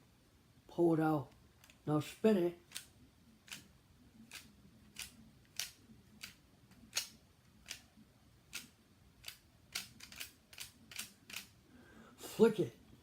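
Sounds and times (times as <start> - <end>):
plastic toy clicks: 2.7 - 2.9, 4.3 - 7.8, 8.5 - 11.5.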